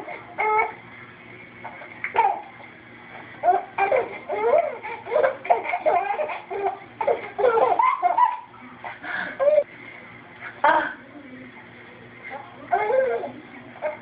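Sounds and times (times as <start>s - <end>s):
child laughing: 3.4s - 9.7s.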